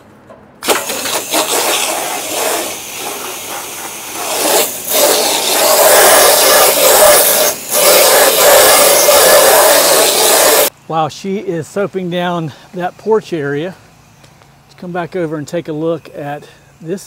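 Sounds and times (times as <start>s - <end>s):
water spraying onto siding: 0.6s - 10.7s.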